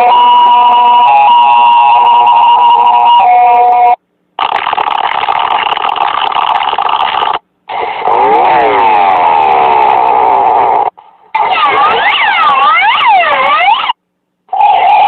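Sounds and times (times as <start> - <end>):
multi-tone siren wail: 0.0 - 4.0, 8.1 - 15.0
harsh static-like buzz: 4.3 - 9.3.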